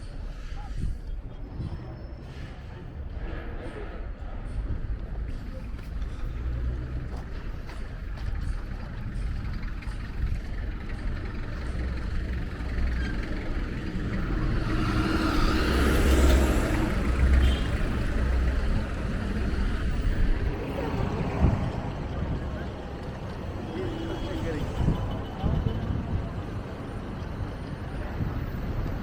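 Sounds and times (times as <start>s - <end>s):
traffic rumble: 0.0s - 29.0s
vehicle passing close: 11.4s - 22.0s.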